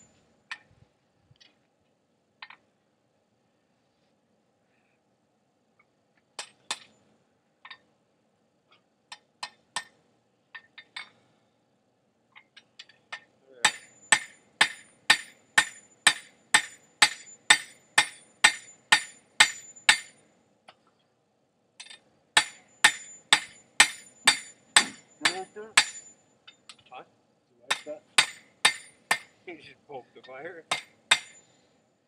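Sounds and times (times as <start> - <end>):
hammer ringing on anvil: 13.6 - 20.1, 21.8 - 26.1, 27.7 - 29.3, 30.7 - 31.4.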